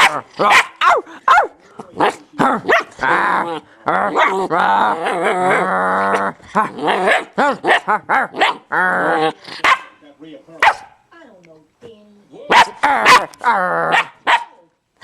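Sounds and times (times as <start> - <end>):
puppy barking: 0.0 - 3.0, 6.9 - 8.7, 9.6 - 10.0, 10.6 - 11.0, 12.5 - 14.6
puppy growling: 0.0 - 9.6, 12.7 - 14.2.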